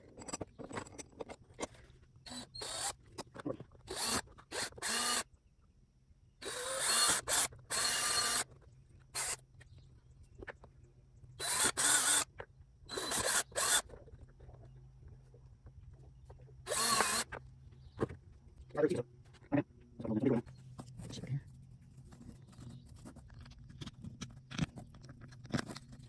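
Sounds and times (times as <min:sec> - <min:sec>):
power drill boring holes: 0:02.2 - 0:03.2, 0:03.8 - 0:05.3, 0:06.4 - 0:08.6, 0:09.2 - 0:09.4, 0:11.4 - 0:13.9, 0:16.6 - 0:17.4.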